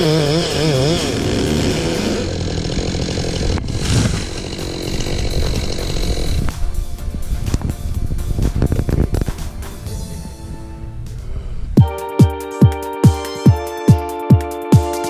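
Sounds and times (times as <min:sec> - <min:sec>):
chainsaw cutting: 0:00.0 - 0:06.9
background music with beat: 0:05.7 - 0:15.0.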